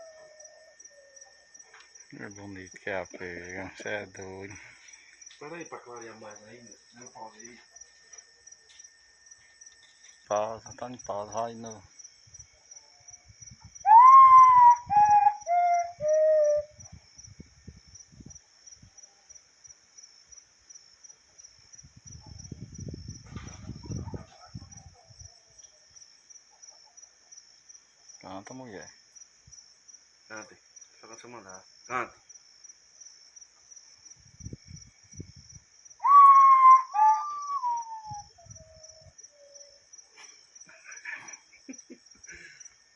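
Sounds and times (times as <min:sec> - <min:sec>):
pulsing cricket trill: 0:00.0 - 0:42.9
bird whistled song: 0:13.8 - 0:16.8, 0:36.0 - 0:38.8.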